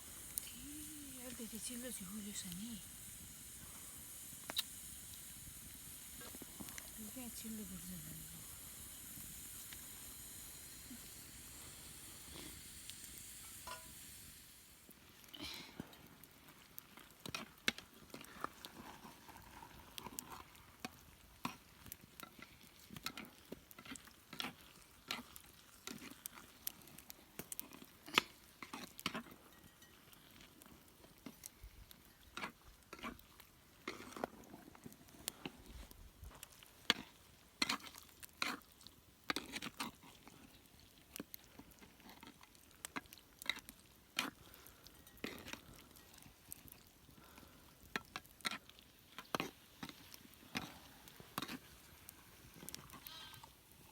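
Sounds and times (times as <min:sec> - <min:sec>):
food being stirred in a pot: 0:00.0 - 0:14.3, 0:16.4 - 0:31.5, 0:32.1 - 0:53.8.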